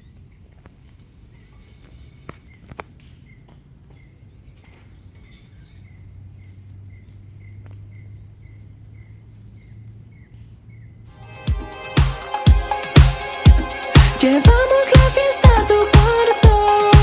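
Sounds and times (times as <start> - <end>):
insects chirping: 0.0 - 11.3.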